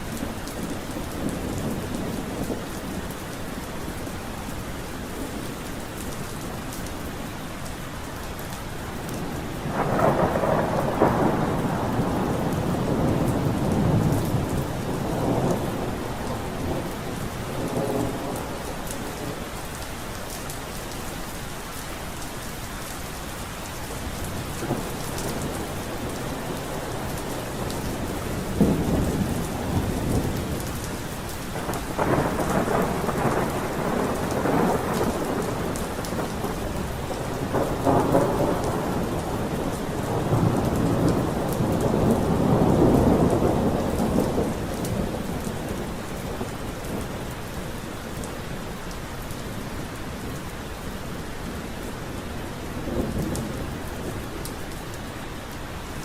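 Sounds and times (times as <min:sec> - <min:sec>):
steady rain: 0:00.0 - 0:56.0
thunder rolling: 0:09.6 - 0:19.3, 0:31.6 - 0:47.2.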